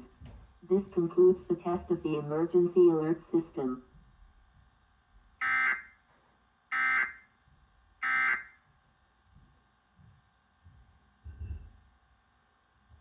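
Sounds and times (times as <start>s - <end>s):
buzzy digital data tones: 5.4s - 6.0s, 6.7s - 7.4s, 8.0s - 8.6s.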